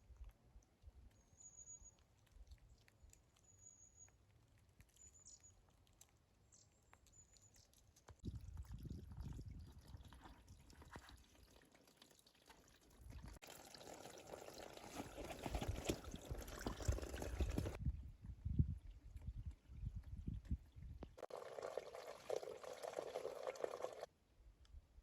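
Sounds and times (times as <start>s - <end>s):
running water splashing: 21.2s - 24.1s.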